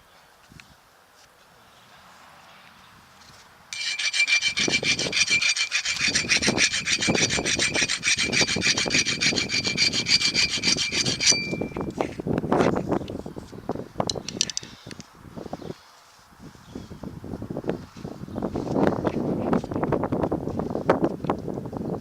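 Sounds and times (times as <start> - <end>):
power tool grinding metal: 3.8 - 11.9.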